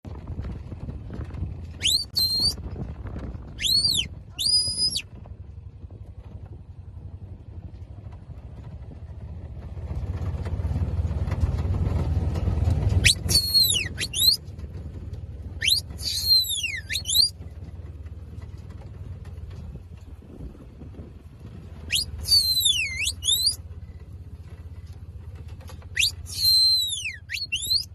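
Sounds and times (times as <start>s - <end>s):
shepherd's whistle signals: 1.8s - 2.6s, 3.5s - 5.1s, 13.0s - 14.4s, 15.6s - 17.4s, 21.8s - 23.6s, 25.9s - 27.9s.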